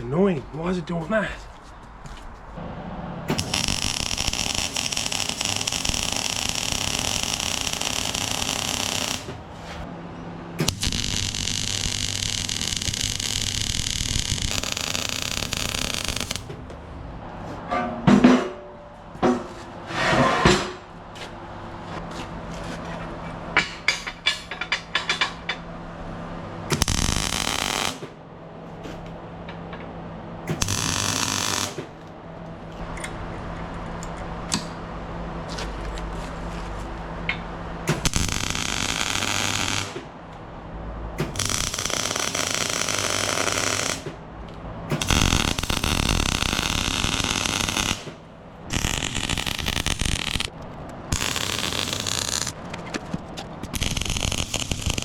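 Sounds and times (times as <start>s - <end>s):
power tool bursts: 3.3s - 9.4s, 10.6s - 16.5s, 26.7s - 28.0s, 30.5s - 31.9s, 38.0s - 40.0s, 41.2s - 44.1s, 45.0s - 50.5s, 51.1s - 52.6s, 53.8s - 55.0s.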